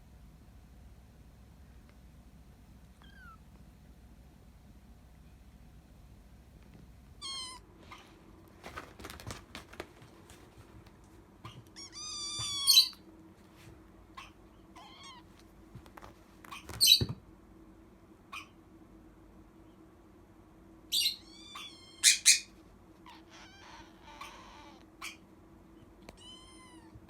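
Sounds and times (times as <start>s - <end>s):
kitten crying: 3.0s - 3.4s, 7.2s - 8.0s, 11.5s - 13.0s, 14.2s - 15.3s, 21.0s - 25.2s, 26.1s - 27.0s.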